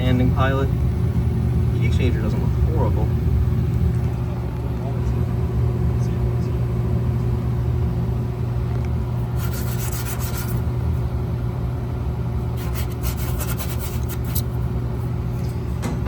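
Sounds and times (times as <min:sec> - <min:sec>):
furnace humming: 0:00.0 - 0:16.0
rubbing and scraping noise: 0:09.4 - 0:10.6, 0:12.6 - 0:14.5.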